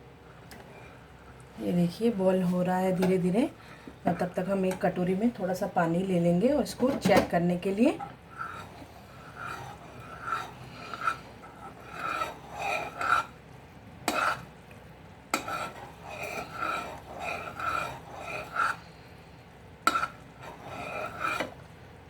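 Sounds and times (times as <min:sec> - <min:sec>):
spoon scraping a pan: 0:06.8 - 0:13.4, 0:14.0 - 0:14.5, 0:15.3 - 0:18.9, 0:19.8 - 0:21.6.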